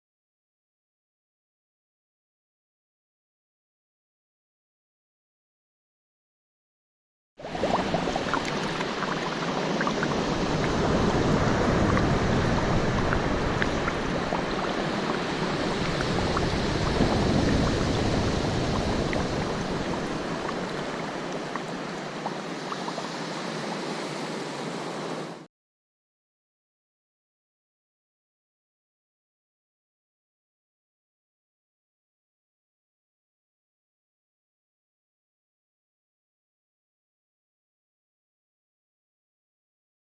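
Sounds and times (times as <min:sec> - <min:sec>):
rushing water: 0:07.4 - 0:25.5.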